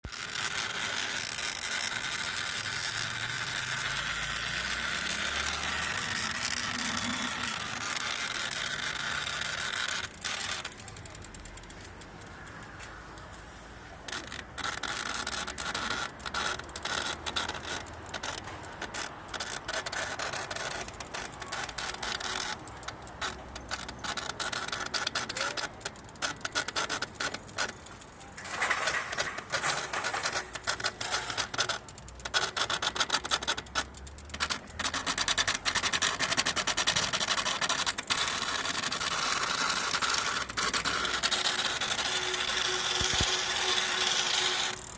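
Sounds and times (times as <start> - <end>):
motor clicking and grinding: 0.0 - 44.9.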